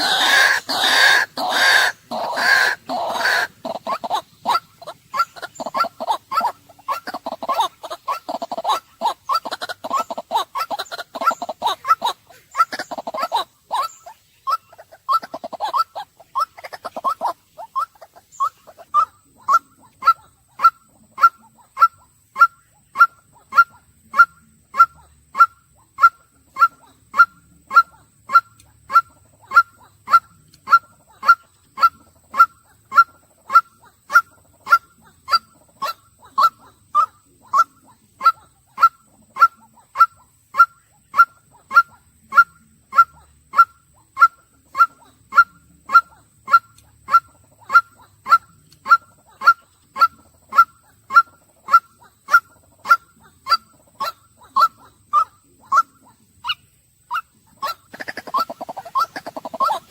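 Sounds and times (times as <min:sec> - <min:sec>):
waterhen honking call: 0:00.0 - 0:59.9.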